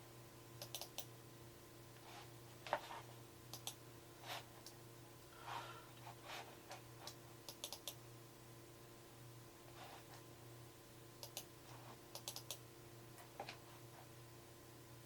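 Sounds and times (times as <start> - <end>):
low electrical hum: 0.0 - 15.0
keyboard and mouse clicks: 0.6 - 1.1, 3.5 - 3.8, 6.7 - 8.0, 11.2 - 11.5, 12.1 - 12.6.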